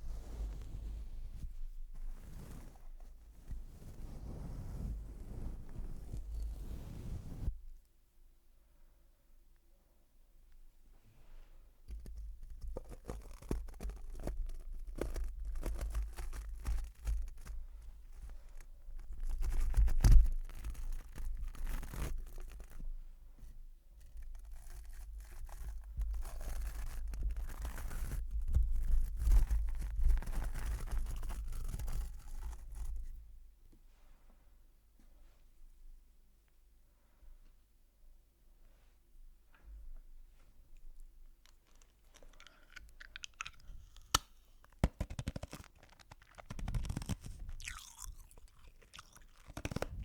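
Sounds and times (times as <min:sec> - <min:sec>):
scratching at the microphone: 0:00.0 - 0:07.7, 0:11.9 - 0:33.2, 0:41.4 - 0:50.0.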